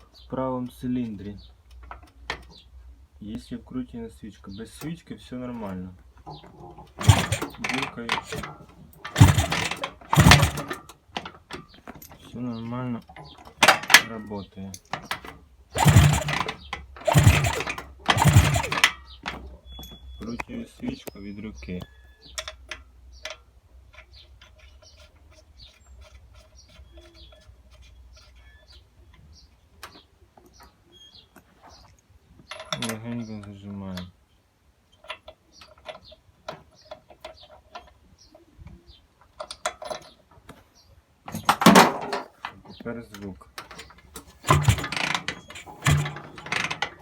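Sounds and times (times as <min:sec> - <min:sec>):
two-stroke engine turning over: 0:06.5 - 0:12.3, 0:13.5 - 0:14.2, 0:14.9 - 0:20.0, 0:41.3 - 0:42.4, 0:43.6 - 0:47.0
plug hole blubbing: 0:07.0 - 0:10.8, 0:15.8 - 0:19.4, 0:44.2 - 0:46.9.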